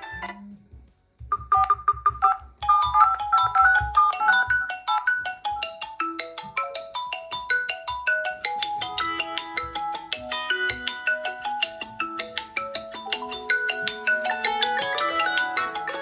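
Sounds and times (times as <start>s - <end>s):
phone ringtone chiming melody: 1.3s - 16.0s
high mallet-like notes: 2.6s - 16.0s.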